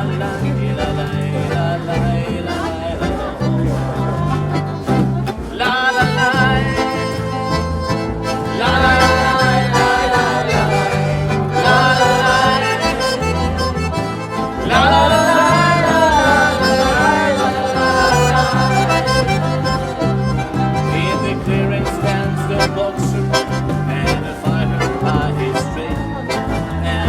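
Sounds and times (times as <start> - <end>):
country band playing: 0.0 - 27.0
free-reed lead instrument: 0.0 - 27.0.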